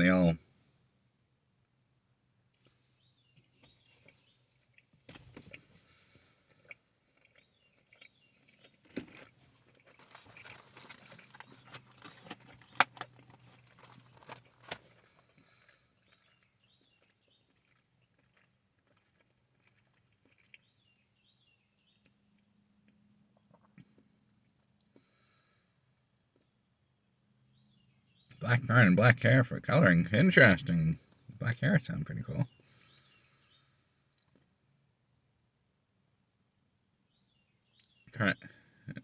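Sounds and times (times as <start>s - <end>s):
plastic packaging crinkling: 9.0s - 15.0s.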